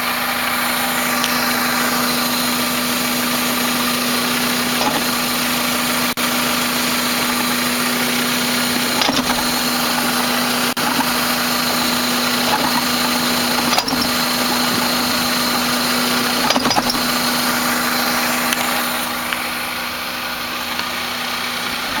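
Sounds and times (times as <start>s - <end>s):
car engine idling: 0.0s - 22.0s
transmission shift clunks: 3.8s - 6.2s, 8.6s - 19.5s.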